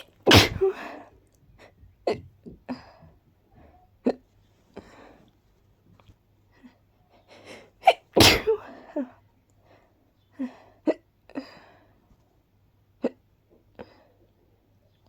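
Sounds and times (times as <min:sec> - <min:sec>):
hiccups: 0:00.0 - 0:00.8, 0:07.8 - 0:08.6
woman sneezing: 0:00.0 - 0:01.0, 0:07.8 - 0:08.8.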